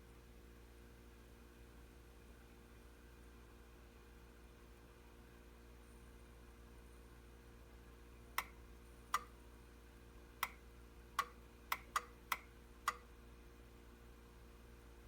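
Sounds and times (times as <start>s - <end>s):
faint steady hum: 0.0s - 15.0s
coffee maker ticks: 11.2s - 13.1s.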